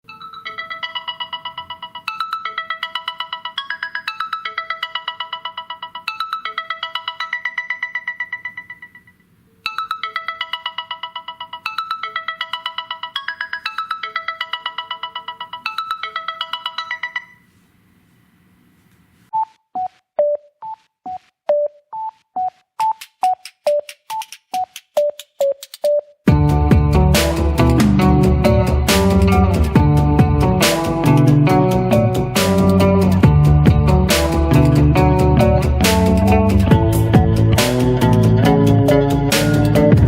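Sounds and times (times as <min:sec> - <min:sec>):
electronic ringtone melody: 0:00.0 - 0:17.5, 0:19.3 - 0:26.8.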